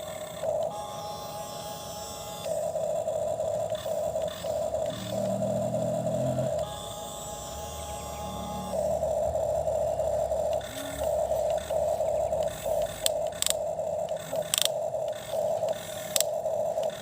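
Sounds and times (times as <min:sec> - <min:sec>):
small electric motor whining: 0:00.0 - 0:17.0
sharp plastic clicks: 0:10.4 - 0:17.0.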